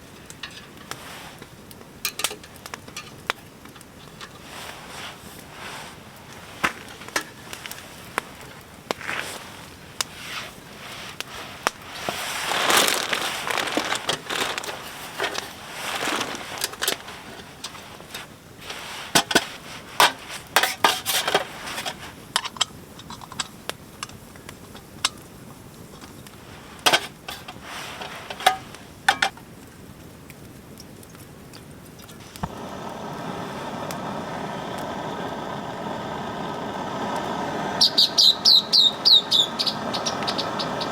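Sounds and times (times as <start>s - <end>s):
metal cookware clinking: 0.1s - 1.0s, 2.0s - 3.2s, 26.9s - 29.4s
rushing noise: 32.4s - 40.9s.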